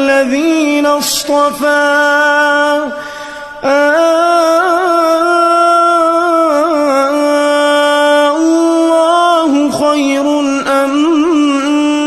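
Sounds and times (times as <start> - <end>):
man chanting melodically: 0.0 - 12.0.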